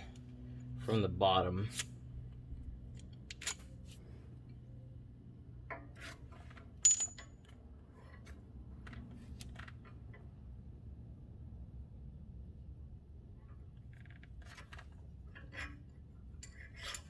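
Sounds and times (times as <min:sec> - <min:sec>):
small metal parts clinking: 0:06.5 - 0:07.6, 0:16.3 - 0:17.0.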